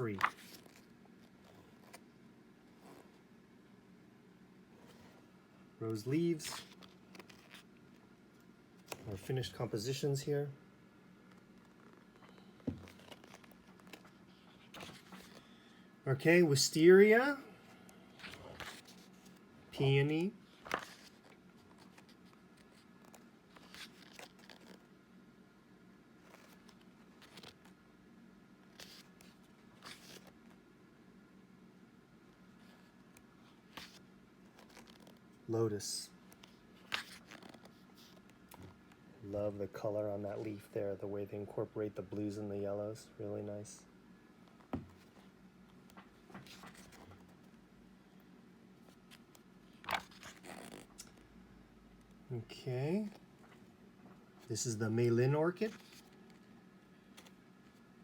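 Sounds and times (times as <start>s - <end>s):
low steady hum: 0.0s - 58.0s
book pages turning: 0.1s - 2.1s, 5.9s - 8.0s, 8.8s - 9.2s, 11.2s - 15.6s, 18.1s - 19.9s, 20.5s - 24.9s, 26.2s - 27.8s, 28.7s - 30.6s, 32.6s - 35.3s, 36.2s - 39.0s, 44.5s - 47.5s, 48.8s - 51.2s, 55.6s - 57.9s.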